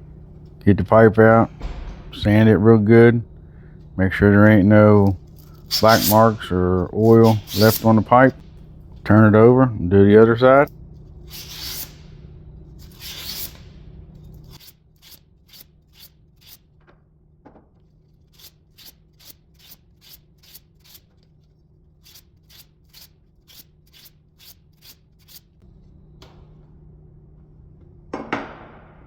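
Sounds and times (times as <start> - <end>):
sandpaper rubbing copper pipe: 5.4 - 8.3, 11.2 - 12.1, 12.8 - 13.8, 14.4 - 16.7, 18.2 - 25.6.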